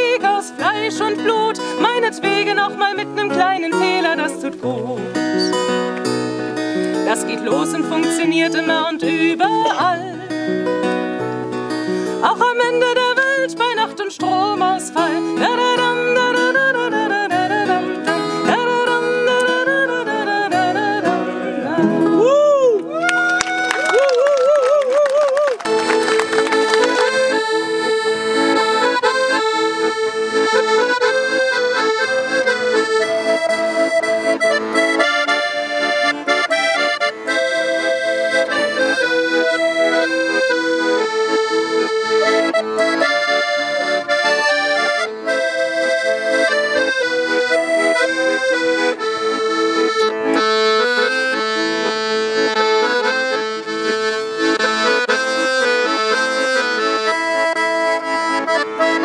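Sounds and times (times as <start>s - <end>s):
instrumental music: 0.0s - 59.0s.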